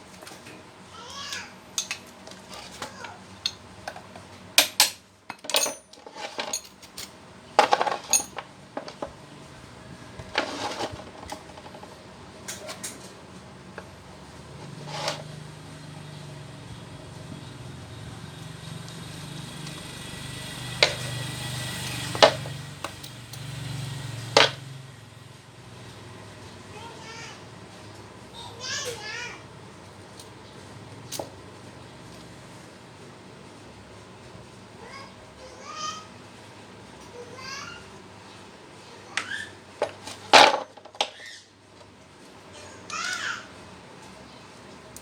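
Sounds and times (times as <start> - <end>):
metal tools clinking on workbench: 1.8 - 9.1, 10.4 - 11.8, 20.8 - 23.6, 24.4 - 24.7.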